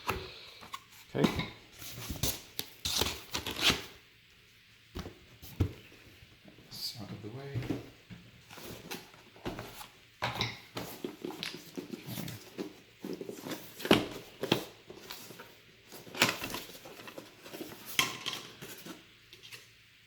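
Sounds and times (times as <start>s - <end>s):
cardboard packaging rustling: 0.6s - 4.0s, 7.6s - 19.7s.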